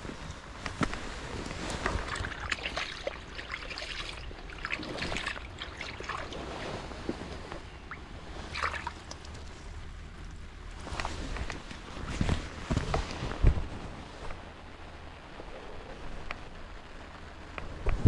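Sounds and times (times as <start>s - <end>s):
water trickling and splashing: 1.0s - 12.2s.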